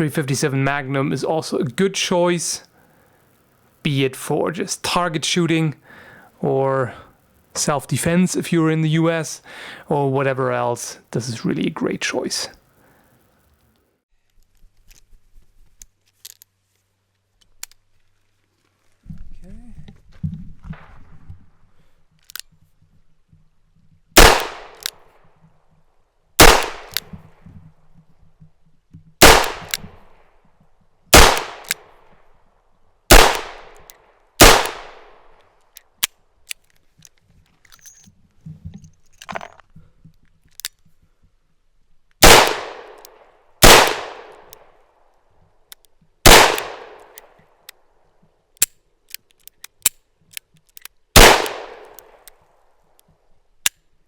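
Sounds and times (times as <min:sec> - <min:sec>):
small metallic clicks: 0:15.7 - 0:18.3, 0:22.1 - 0:22.8, 0:24.4 - 0:30.8, 0:31.4 - 0:32.3, 0:33.4 - 0:41.0, 0:43.9 - 0:54.0.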